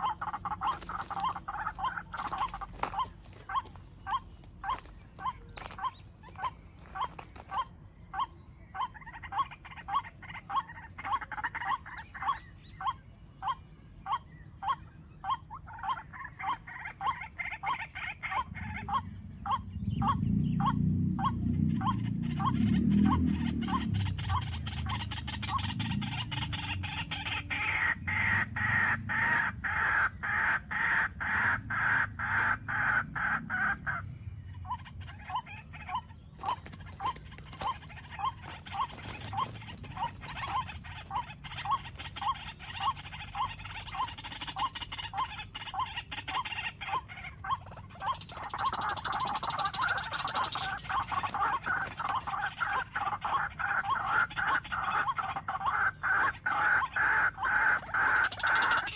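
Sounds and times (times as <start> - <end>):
harsh bird chatter: 0.0 - 13.6, 34.7 - 58.9.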